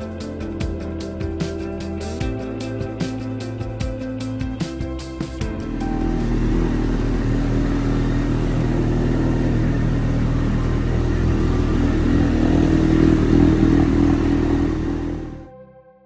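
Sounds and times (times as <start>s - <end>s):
motorcycle engine running: 5.4s - 15.5s.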